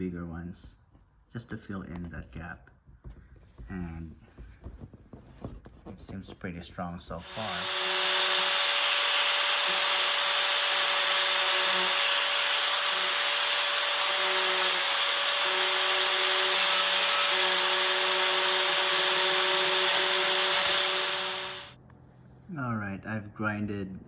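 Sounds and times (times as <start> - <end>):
power grinder whining: 7.2 - 21.8.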